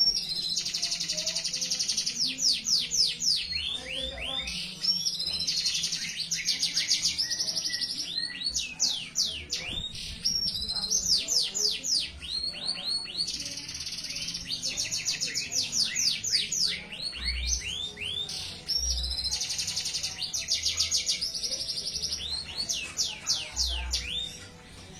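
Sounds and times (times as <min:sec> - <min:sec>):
canary singing: 0:00.0 - 0:24.9.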